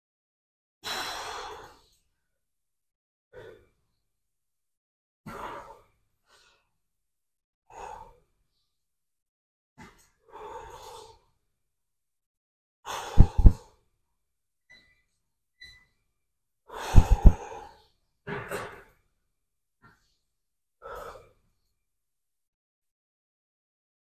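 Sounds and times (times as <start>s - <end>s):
man exhaling forcefully: 12.9s - 13.6s, 16.8s - 17.4s.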